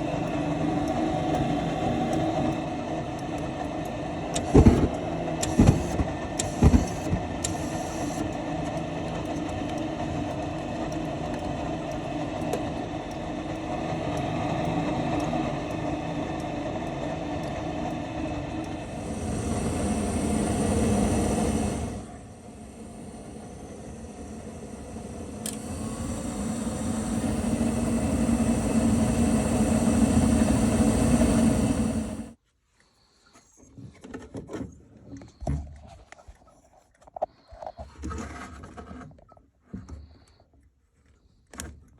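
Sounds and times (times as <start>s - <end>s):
motor running: 0.0s - 32.4s.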